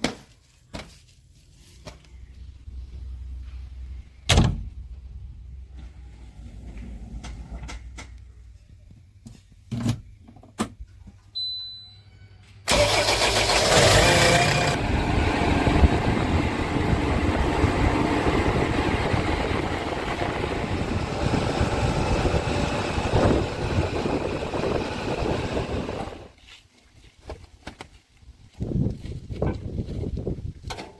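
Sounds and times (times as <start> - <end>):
faint low engine rumble: 1.6 - 9.2, 12.7 - 26.3
diesel engine running under load: 12.7 - 26.3.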